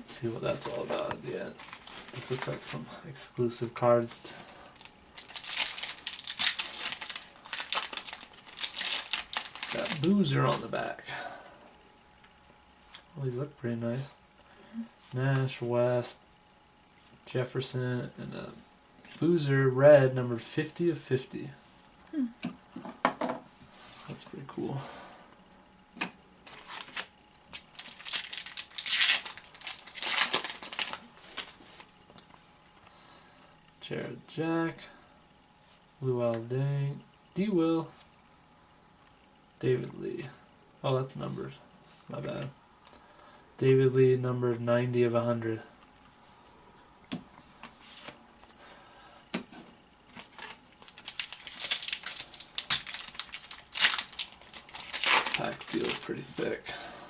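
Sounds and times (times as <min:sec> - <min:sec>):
wrapper crinkling: 0:00.6 - 0:02.7, 0:04.8 - 0:10.7, 0:26.4 - 0:31.9, 0:50.1 - 0:56.4.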